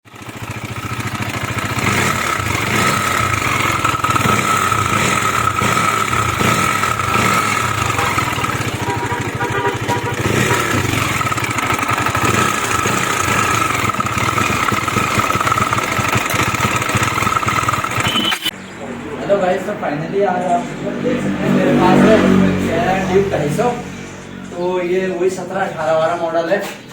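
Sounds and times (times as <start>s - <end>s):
motorcycle engine with mechanical noise: 0.0s - 26.9s.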